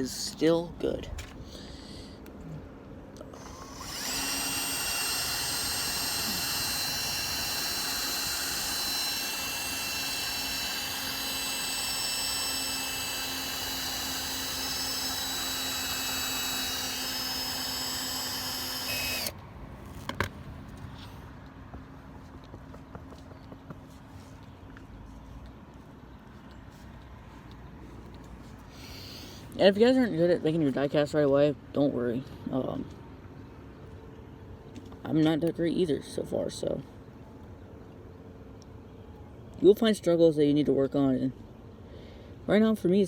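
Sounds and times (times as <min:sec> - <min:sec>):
small electric drill whining: 0:03.2 - 0:19.4.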